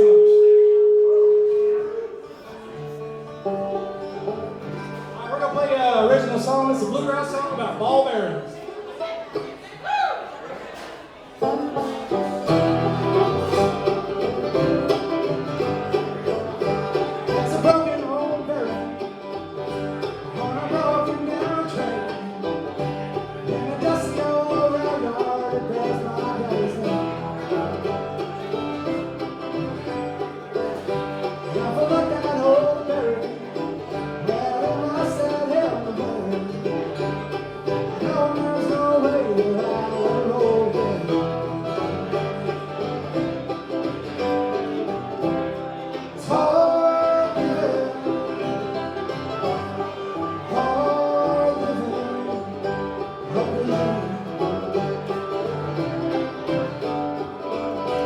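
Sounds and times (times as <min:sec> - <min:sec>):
guitar picking: 0:00.0 - 0:09.6, 0:11.4 - 0:58.0
banjo picking: 0:00.0 - 0:58.0
bluegrass band playing: 0:00.0 - 0:58.0.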